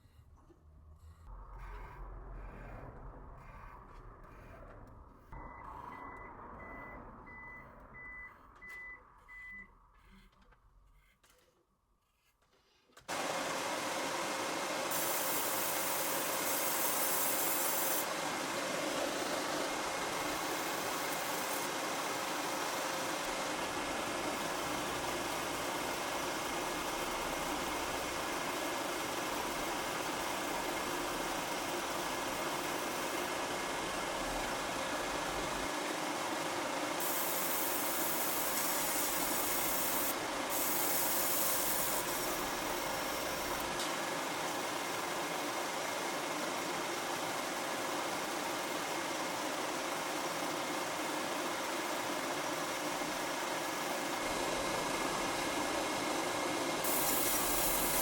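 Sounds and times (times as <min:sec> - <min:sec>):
small machine humming: 0:13.1 - 0:58.0
high hiss: 0:56.8 - 0:58.0.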